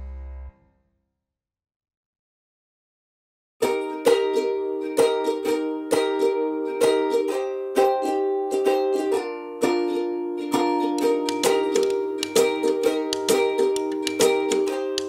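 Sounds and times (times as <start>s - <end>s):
strummed string chords: 0.0s - 0.6s, 3.6s - 15.0s.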